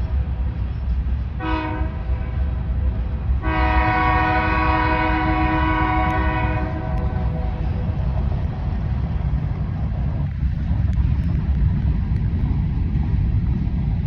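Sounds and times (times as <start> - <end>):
passing train rumble: 0.0 - 14.0
locomotive horn blasts: 1.4 - 2.6, 3.4 - 7.7.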